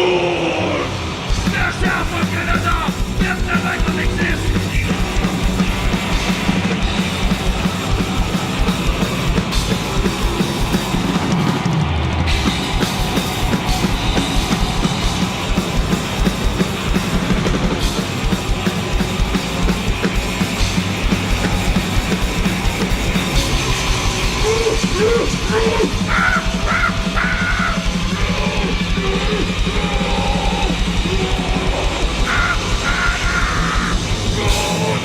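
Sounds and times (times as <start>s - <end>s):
distorted guitar and bass noise: 0.0s - 35.0s
noisecore music: 0.0s - 35.0s
fast dense drumming: 1.0s - 35.0s.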